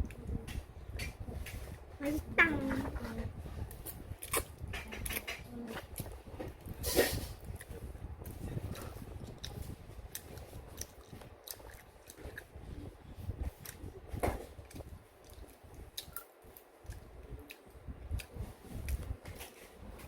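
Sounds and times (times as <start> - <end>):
wet mouth clicks: 4.2 - 6.2
close-up chewing noodles: 7.4 - 12.9.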